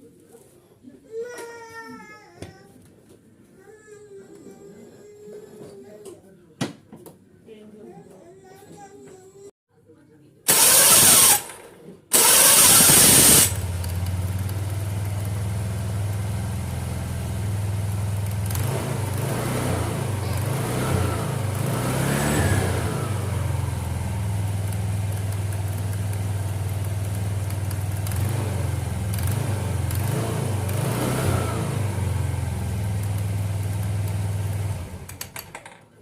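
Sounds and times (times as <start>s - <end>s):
loud rushing burst: 10.5s - 13.7s
scooter engine idling: 12.1s - 35.5s.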